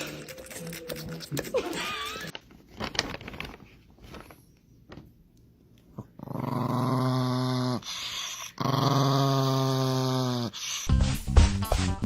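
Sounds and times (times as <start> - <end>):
dog growling low: 6.0 - 10.7.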